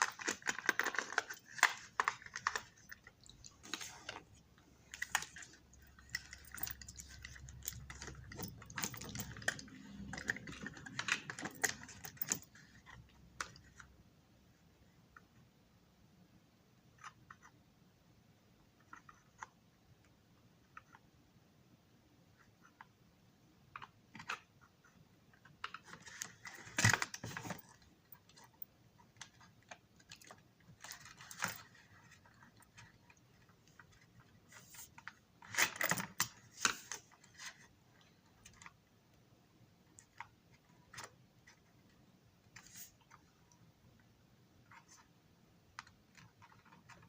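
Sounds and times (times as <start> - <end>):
small parts clicking and rattling: 0.0 - 13.8, 25.4 - 38.8.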